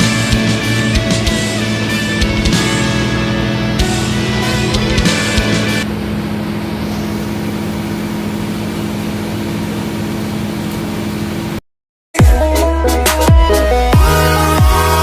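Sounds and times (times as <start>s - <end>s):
diesel engine idling: 0.0s - 11.6s.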